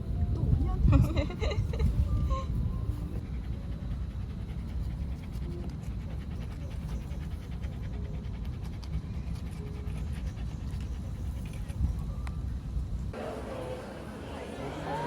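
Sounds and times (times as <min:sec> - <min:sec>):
dog panting: 0:00.8 - 0:12.4.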